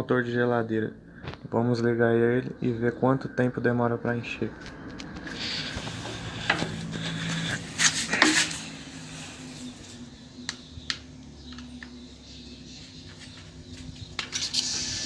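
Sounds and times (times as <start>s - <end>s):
compressors humming: 5.1s - 15.0s.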